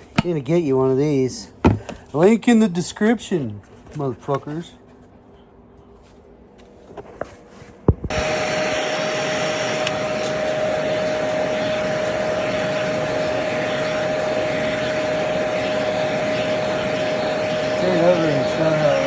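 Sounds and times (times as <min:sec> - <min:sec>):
vacuum suction unit whining: 0:08.1 - 0:19.0.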